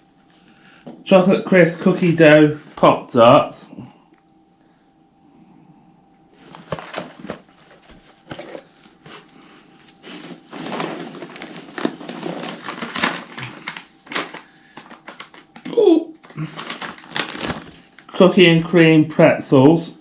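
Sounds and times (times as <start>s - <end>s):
rustling packing peanuts: 6.3s - 18.7s.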